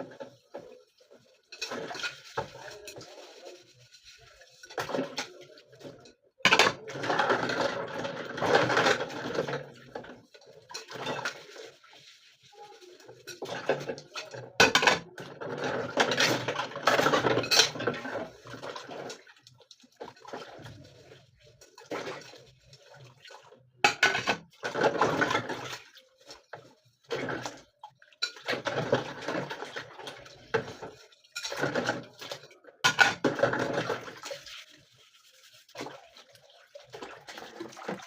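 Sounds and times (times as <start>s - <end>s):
dishes and cutlery clattering: 0.0s - 3.4s, 4.5s - 11.8s, 12.7s - 19.4s, 23.8s - 34.3s.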